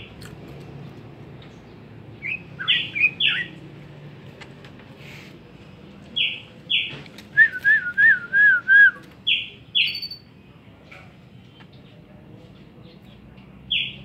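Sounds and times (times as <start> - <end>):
pet bird calling: 2.2 - 3.6.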